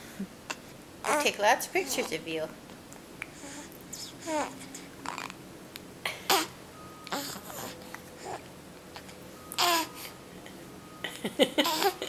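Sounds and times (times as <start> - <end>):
baby babbling: 1.0 - 1.3, 3.4 - 5.4, 7.1 - 10.0.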